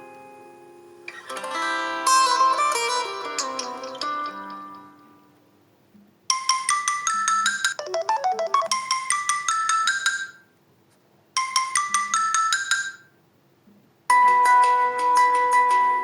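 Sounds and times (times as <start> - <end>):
phone tone melody: 7.8 - 10.1.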